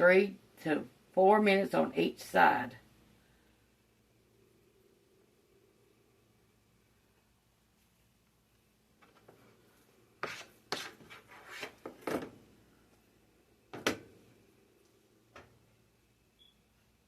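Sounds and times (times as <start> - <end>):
kitchen items rubbing and scraping: 9.1 - 12.1.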